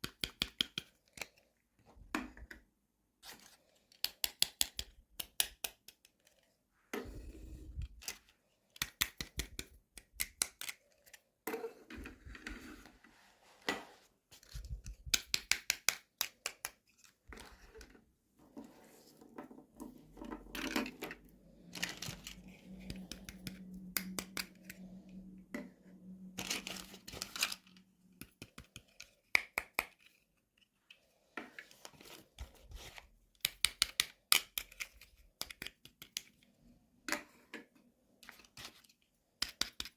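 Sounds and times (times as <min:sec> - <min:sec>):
packaging rustling and scraping: 0:20.8 - 0:23.1.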